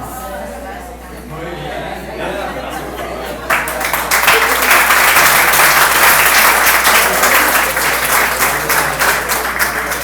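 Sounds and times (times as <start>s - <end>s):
audience applauding: 3.5s - 10.0s.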